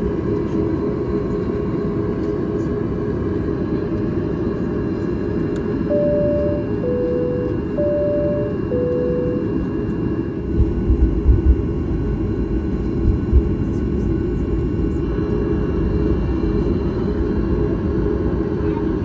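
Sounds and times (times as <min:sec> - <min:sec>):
airplane cabin rumble: 0:05.9 - 0:09.6, 0:10.3 - 0:18.9.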